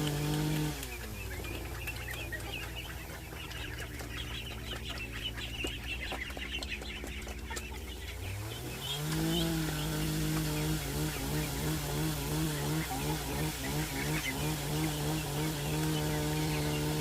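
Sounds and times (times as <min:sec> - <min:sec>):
chickens clucking: 0:00.0 - 0:17.0
small engine idling and revving: 0:00.0 - 0:17.0.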